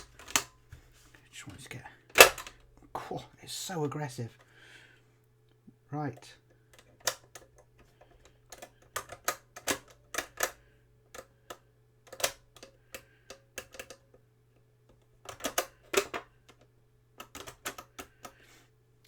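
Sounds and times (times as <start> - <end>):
cassette deck buttons clacking: 2.1 - 2.6, 6.8 - 10.6, 11.2 - 13.0, 15.3 - 16.6, 17.2 - 18.4.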